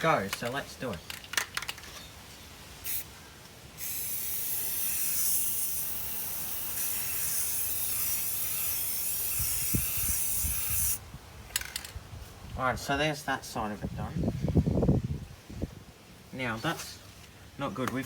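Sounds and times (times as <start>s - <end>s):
spray paint can hissing: 2.8s - 3.1s, 3.8s - 11.0s.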